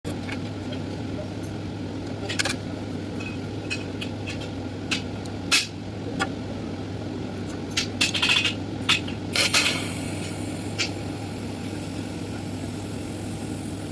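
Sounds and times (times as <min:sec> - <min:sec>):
welding arc hissing: 0:09.3 - 0:13.9.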